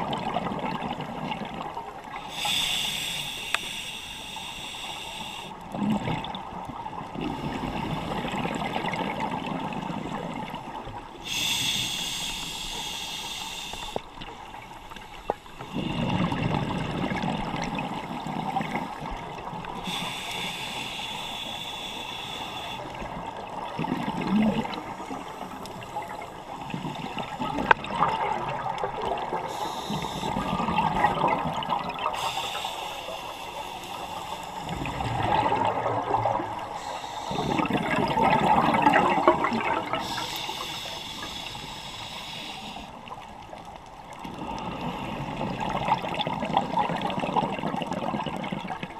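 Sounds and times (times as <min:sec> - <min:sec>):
bubbles gurgling underwater: 0:00.0 - 0:02.2, 0:05.7 - 0:10.9, 0:15.6 - 0:20.0, 0:23.0 - 0:25.4, 0:26.0 - 0:32.2, 0:34.6 - 0:40.3, 0:44.1 - 0:48.9
diver breathing through regulator: 0:02.2 - 0:05.6, 0:11.2 - 0:14.1, 0:19.8 - 0:23.1, 0:29.4 - 0:31.4, 0:32.0 - 0:35.8, 0:36.5 - 0:38.5, 0:39.6 - 0:43.1.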